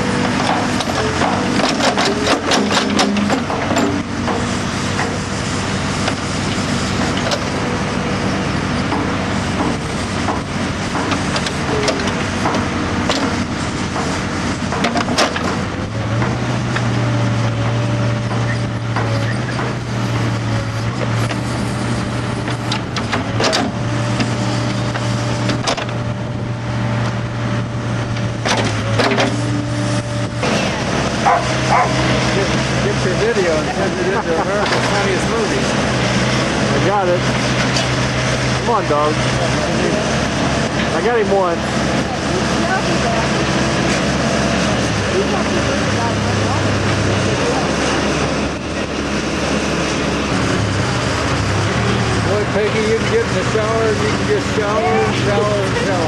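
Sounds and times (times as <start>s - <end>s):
excavator engine running under load: 0.0s - 56.0s
metallic clanks of digging: 0.4s - 4.4s.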